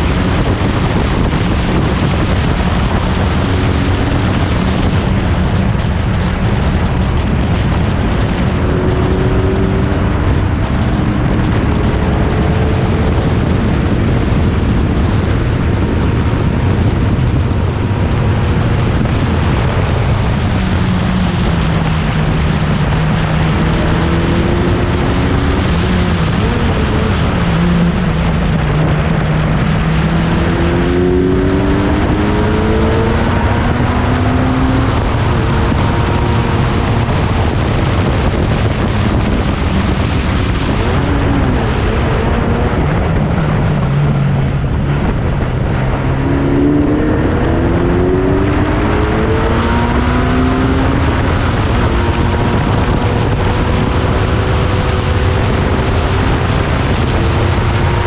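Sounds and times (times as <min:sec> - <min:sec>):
racing car engines revving: 0:00.0 - 0:58.0
wind noise on microphone: 0:00.0 - 0:58.0.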